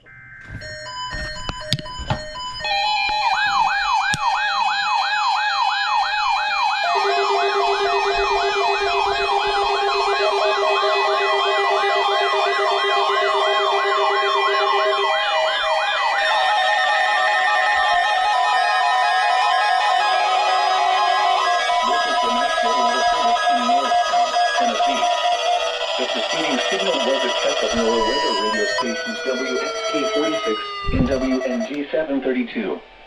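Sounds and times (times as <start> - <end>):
rising and falling siren-like tone: 0.0 - 32.1
held electronic tones: 0.0 - 33.0
lower steady tone: 21.8 - 33.0.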